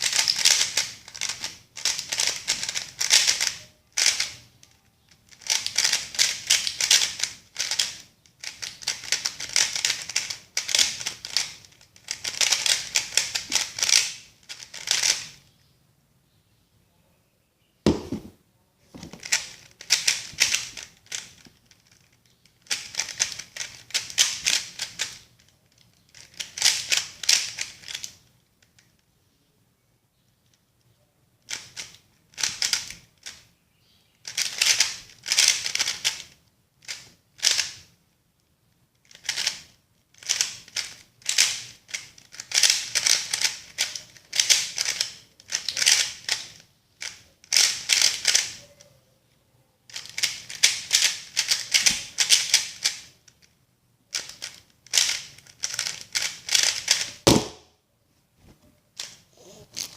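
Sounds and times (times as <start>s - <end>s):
plastic puzzle cube clicking: 0.0s - 15.4s, 19.0s - 29.0s, 31.4s - 33.4s, 34.2s - 37.8s, 39.0s - 48.6s, 49.9s - 53.4s, 54.1s - 57.6s.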